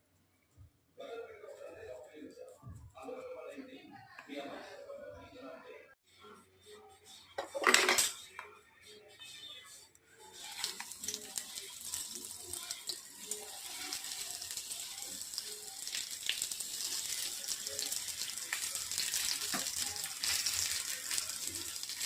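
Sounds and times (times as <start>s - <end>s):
food sizzling in hot oil: 10.2s - 22.0s
oil crackling and popping: 10.4s - 22.0s.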